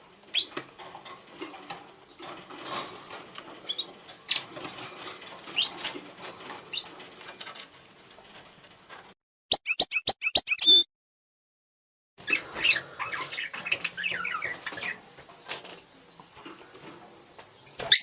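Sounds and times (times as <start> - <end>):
soft rustling and fluttering: 0.6 - 9.2
budgerigars chirping: 9.5 - 10.8.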